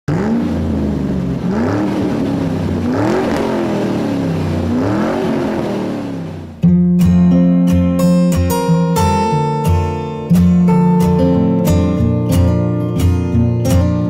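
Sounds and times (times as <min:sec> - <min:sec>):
car engine revving: 0:00.0 - 0:06.7
strummed acoustic guitar music: 0:00.2 - 0:14.0.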